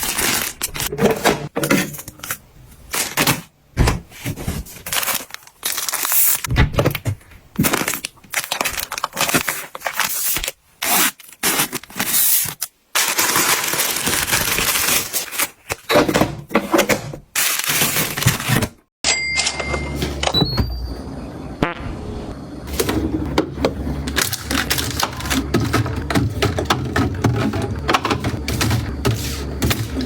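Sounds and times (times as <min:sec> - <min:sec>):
plastic packaging crinkling: 0:00.0 - 0:00.9, 0:04.4 - 0:06.5, 0:07.6 - 0:15.8, 0:17.4 - 0:18.8, 0:24.0 - 0:30.0.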